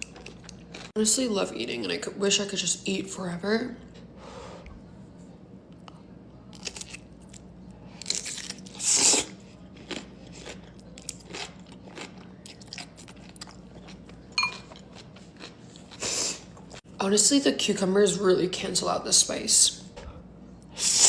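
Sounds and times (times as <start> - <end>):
crunching cucumber bites: 8.0 - 13.9.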